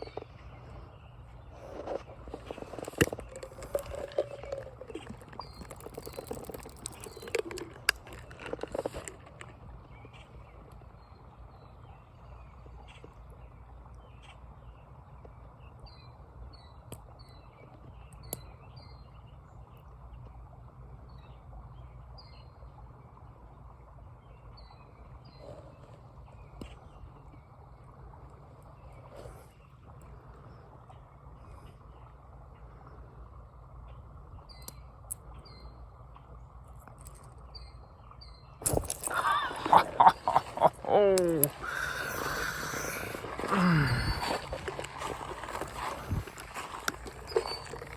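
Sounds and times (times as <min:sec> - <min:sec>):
small birds chirping: 0:00.0 - 0:19.8, 0:33.9 - 0:47.9.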